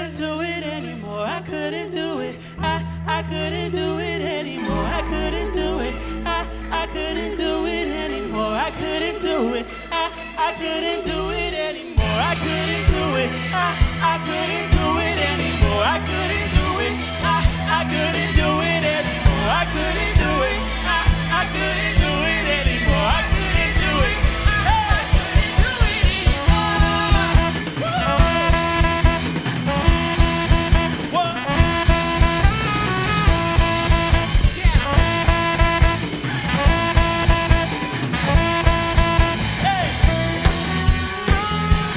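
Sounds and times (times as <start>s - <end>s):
bass guitar: 0.0s - 41.9s
drums: 0.0s - 41.9s
live band jazz groove: 4.2s - 41.9s.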